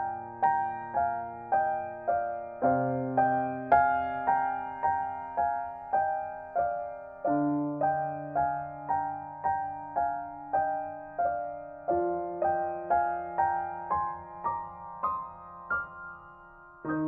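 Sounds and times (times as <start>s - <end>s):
soft slow piano melody: 0.0s - 17.0s.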